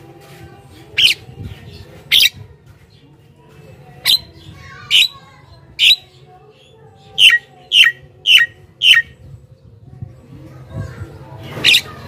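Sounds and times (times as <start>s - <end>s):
bird squawking calls: 7.2s - 9.1s.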